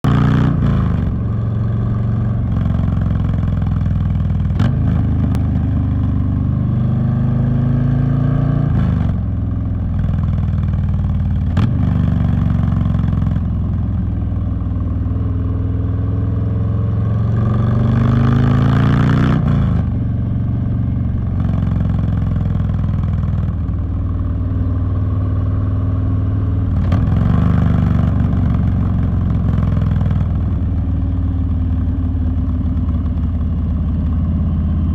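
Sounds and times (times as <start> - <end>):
motorcycle engine accelerating: 0.0 - 34.9.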